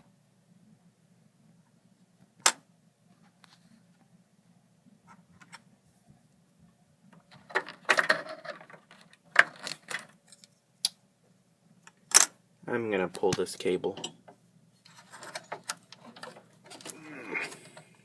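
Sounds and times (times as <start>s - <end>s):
plastic rattling: 7.3s - 10.2s.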